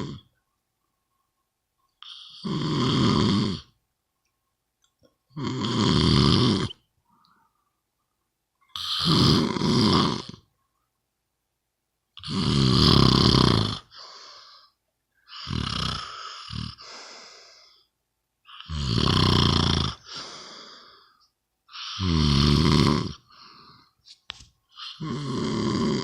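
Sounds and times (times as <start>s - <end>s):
loud rattling snoring: 0.0s - 0.2s, 2.0s - 3.7s, 5.4s - 6.8s, 8.8s - 10.4s, 12.2s - 13.9s, 15.3s - 16.8s, 18.5s - 20.1s, 21.8s - 23.2s, 24.8s - 26.0s
airy breath: 13.9s - 14.8s, 16.0s - 17.9s, 20.0s - 21.3s.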